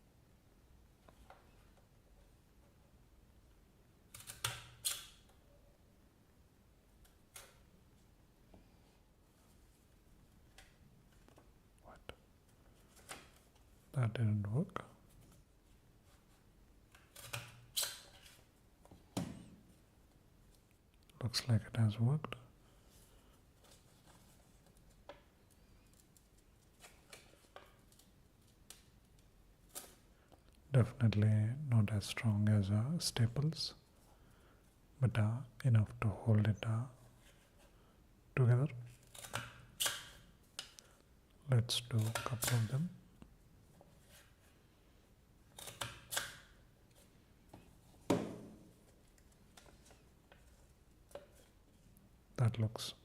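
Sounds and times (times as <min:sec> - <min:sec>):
paper and stapler clicks and rustles: 0:04.1 - 0:05.3, 0:45.5 - 0:46.6.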